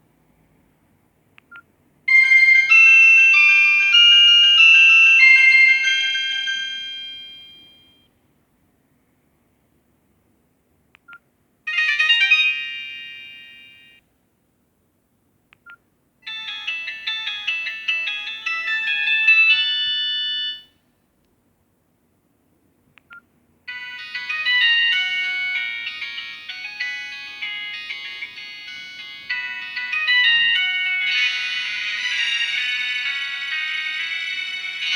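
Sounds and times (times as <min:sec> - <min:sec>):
electronic ringtone melody: 0:02.1 - 0:08.0, 0:11.7 - 0:14.0, 0:16.3 - 0:20.7, 0:23.7 - 0:34.9.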